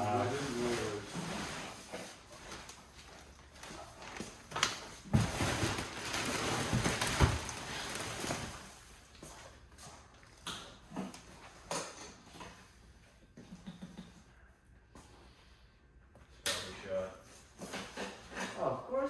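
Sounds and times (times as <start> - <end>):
rustling and scraping of debris: 0.0 - 9.4.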